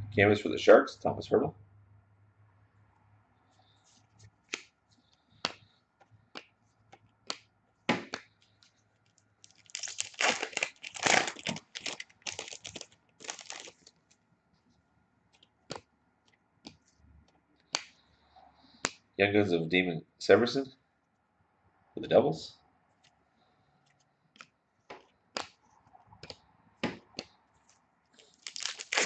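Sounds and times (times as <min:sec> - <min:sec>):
foil wrapper tearing and crinkling: 0:09.4 - 0:13.9, 0:28.2 - 0:29.0.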